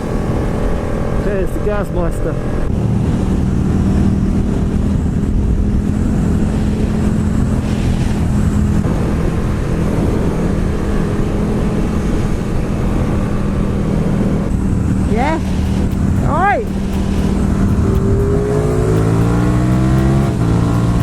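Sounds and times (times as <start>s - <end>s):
wind rushing over microphone: 0.0s - 21.0s
motorcycle engine running: 12.8s - 21.0s.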